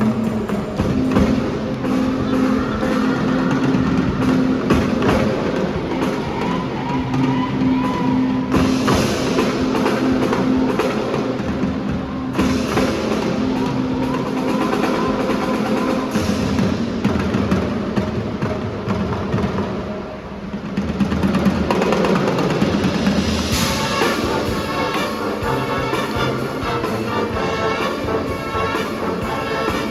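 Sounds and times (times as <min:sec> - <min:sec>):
drumline rapid percussion: 0:00.0 - 0:29.9
brass sustained note: 0:23.4 - 0:29.9.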